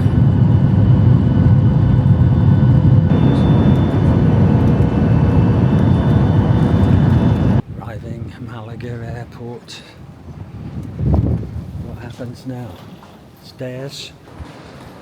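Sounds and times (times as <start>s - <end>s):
airliner engine rumble in cabin: 0.0s - 8.3s.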